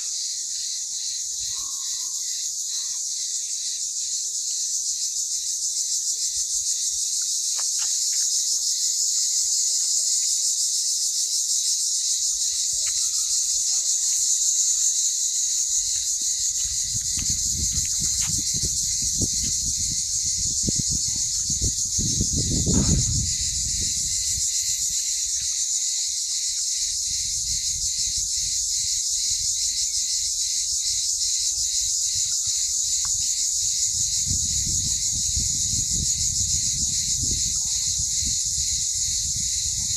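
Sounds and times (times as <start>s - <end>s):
insect chorus: 0.0s - 39.9s
low rumbling gusts: 16.7s - 24.5s, 33.8s - 39.9s.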